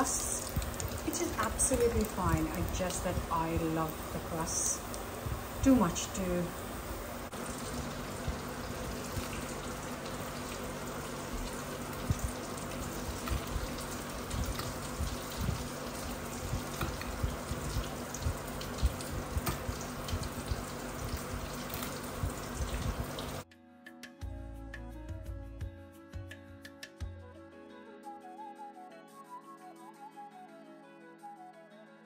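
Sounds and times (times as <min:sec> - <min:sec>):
low steady hum: 0:00.0 - 0:23.4
oil sizzling and popping: 0:00.0 - 0:23.4.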